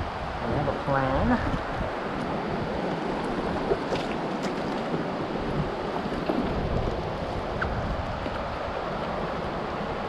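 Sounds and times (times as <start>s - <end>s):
whitewater rushing: 0.0s - 10.0s
wind buffeting microphone: 0.0s - 10.0s.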